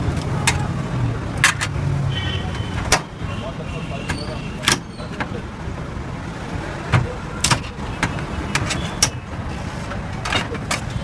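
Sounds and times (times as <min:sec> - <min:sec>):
street traffic rumble: 0:00.0 - 0:11.0
sharp clicks and knocks: 0:01.3 - 0:01.8, 0:06.9 - 0:09.3, 0:09.9 - 0:11.0.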